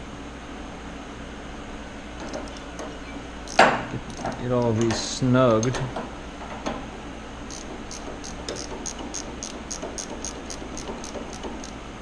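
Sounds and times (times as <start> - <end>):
steady background hum: 0.0 - 12.0
ratchet wrench clicking: 2.2 - 6.0, 7.5 - 12.0.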